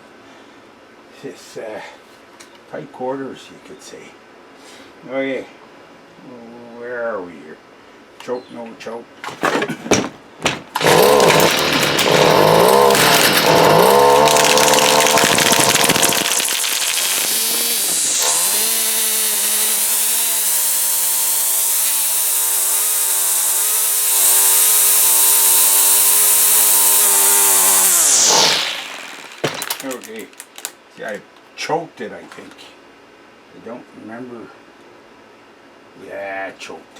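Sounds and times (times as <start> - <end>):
string trimmer engine running: 10.4 - 30.7.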